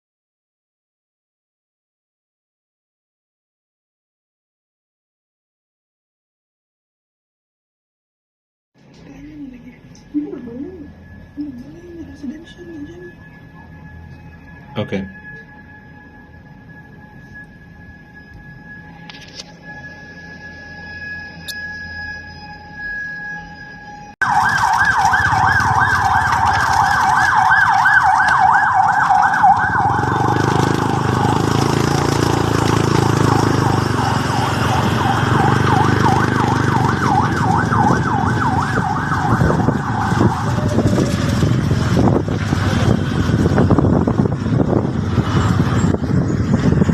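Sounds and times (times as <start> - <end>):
traffic noise: 8.8 - 18.0, 24.2 - 46.9
fire truck siren yelping: 9.4 - 46.9
heavy vehicle engine rumbling: 24.7 - 46.9.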